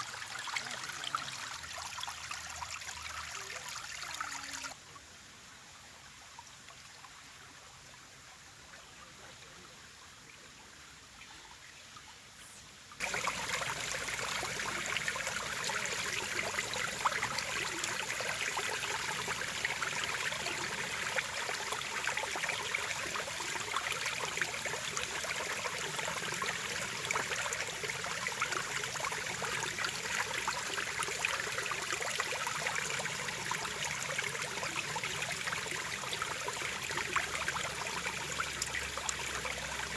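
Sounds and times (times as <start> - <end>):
stream babbling: 0.0 - 4.8, 9.5 - 39.9.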